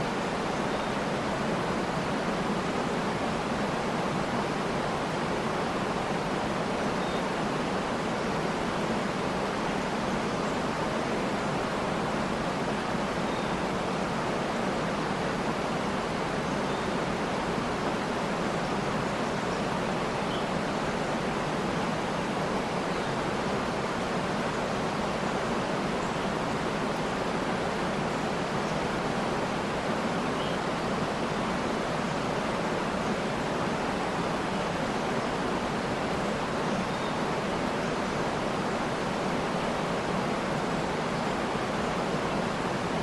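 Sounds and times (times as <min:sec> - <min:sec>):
waterfall rushing: 0:00.0 - 0:43.0
faint high bird chirps: 0:07.0 - 0:07.3.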